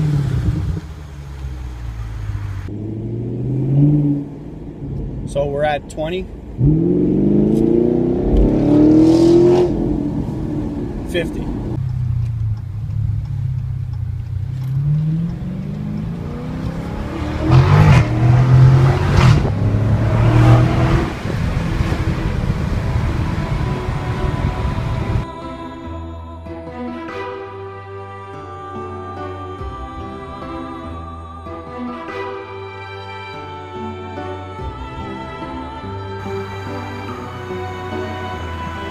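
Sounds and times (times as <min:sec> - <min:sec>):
car engine accelerating hard: 0:06.3 - 0:25.2.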